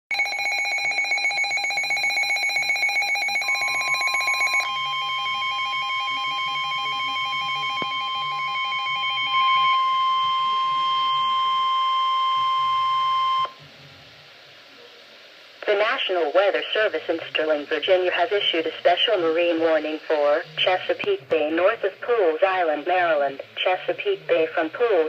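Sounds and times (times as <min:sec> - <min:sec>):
steady high alert tone: 0:00.1 - 0:13.5.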